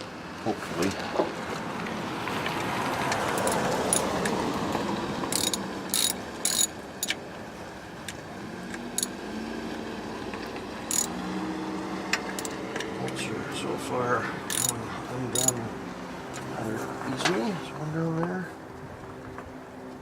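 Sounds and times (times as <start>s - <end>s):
ratchet wrench ratcheting: 3.4s - 4.1s, 5.3s - 7.2s, 9.0s - 9.2s, 10.9s - 11.1s, 12.4s - 12.6s, 14.5s - 14.8s, 15.4s - 15.6s
wrench clinking on bolts: 3.4s - 4.1s, 5.3s - 7.2s, 9.0s - 9.2s, 10.9s - 11.1s, 12.4s - 12.6s, 14.5s - 14.8s, 15.4s - 15.6s.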